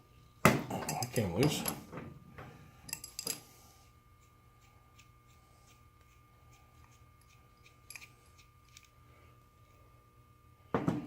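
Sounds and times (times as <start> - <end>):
faint steady hum: 0.0 - 11.0
metallic clicks of tools handled: 2.9 - 3.5, 7.6 - 9.0.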